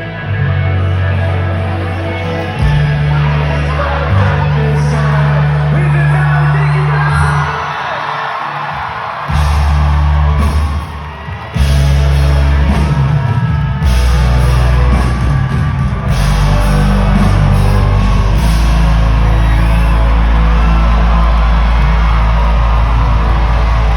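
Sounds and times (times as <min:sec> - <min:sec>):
rock band playing live: 0:00.0 - 0:23.9.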